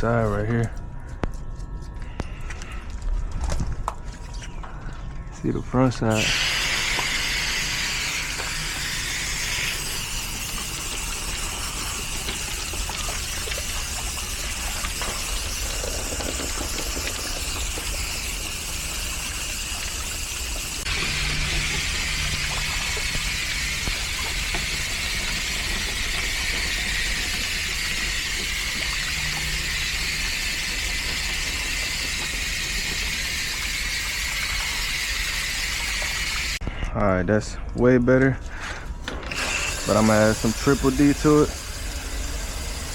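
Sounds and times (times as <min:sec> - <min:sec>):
hose spray hissing: 0:06.1 - 0:36.6, 0:39.4 - 0:42.9.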